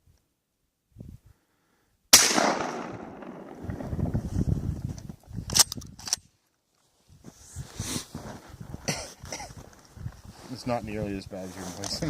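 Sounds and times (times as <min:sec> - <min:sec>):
shotgun shot echoing: 0:02.1 - 0:04.0.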